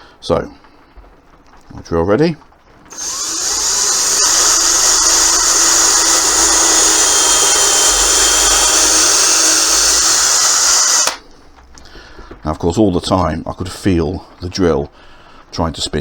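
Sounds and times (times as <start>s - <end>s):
electric drill boring wood: 2.9s - 11.2s.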